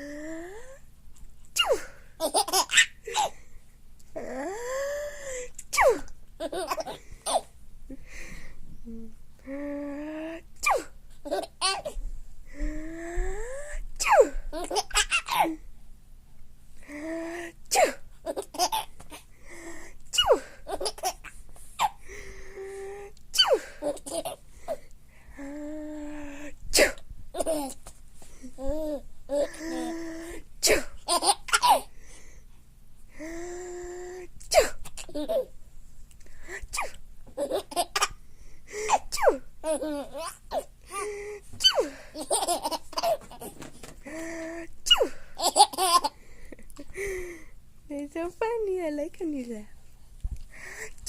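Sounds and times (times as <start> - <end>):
person sneezing: 1.6 - 2.0, 10.6 - 11.0, 14.0 - 14.4, 17.7 - 18.0, 23.4 - 23.8, 26.7 - 27.0, 30.6 - 31.0, 34.5 - 34.8, 44.1 - 45.3
baby laughing: 1.6 - 3.3, 14.0 - 15.6, 18.3 - 19.2, 20.2 - 22.0, 23.4 - 24.4, 27.4 - 27.8, 28.6 - 30.4, 31.1 - 31.9, 34.9 - 35.5, 36.8 - 38.2, 38.9 - 41.0, 41.6 - 46.1.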